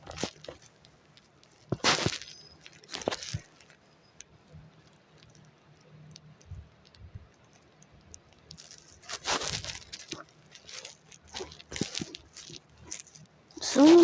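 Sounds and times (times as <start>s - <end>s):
rustling scrape: 0.0s - 0.7s, 1.6s - 3.8s, 8.5s - 14.0s
faint low hum: 0.0s - 14.0s.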